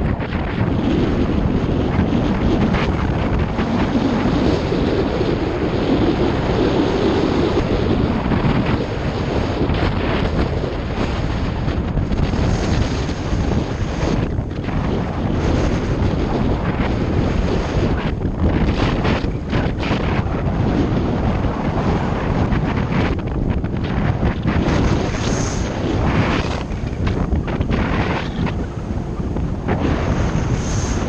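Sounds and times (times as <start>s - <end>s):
wind buffeting microphone: 0.0s - 31.0s.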